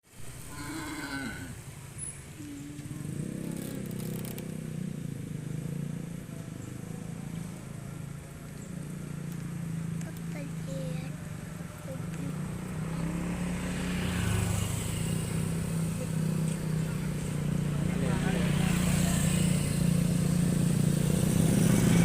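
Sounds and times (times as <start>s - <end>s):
cow mooing: 0.5s - 1.6s.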